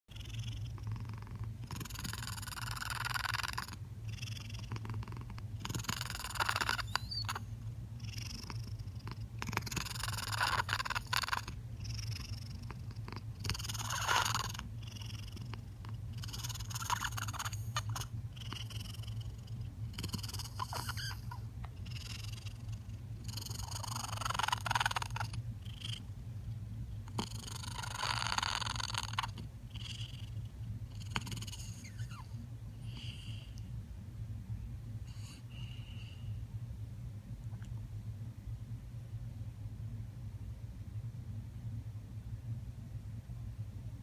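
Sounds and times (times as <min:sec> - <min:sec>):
cat purring: 0:00.1 - 0:26.1, 0:27.0 - 0:33.6.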